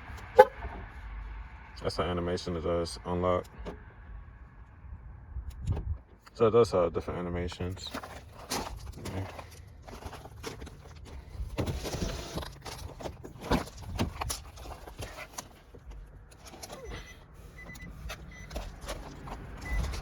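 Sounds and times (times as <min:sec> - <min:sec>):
faint turn signal ticking: 0:17.3 - 0:20.0.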